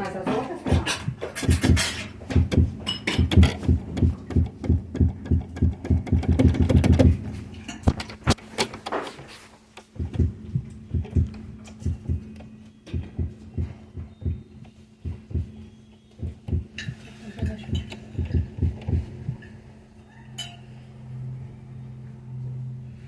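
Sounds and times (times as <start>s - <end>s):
electrical hum: 0.0s - 23.0s
amplified heartbeat thumps: 0.7s - 7.3s, 10.0s - 17.0s, 17.6s - 19.5s.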